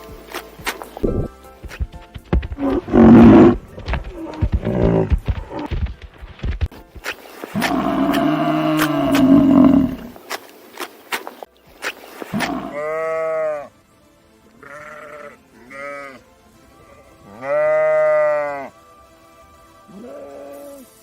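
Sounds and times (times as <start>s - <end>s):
sheep bleating: 12.4s - 13.7s, 14.6s - 16.2s, 16.8s - 18.8s, 19.9s - 20.8s.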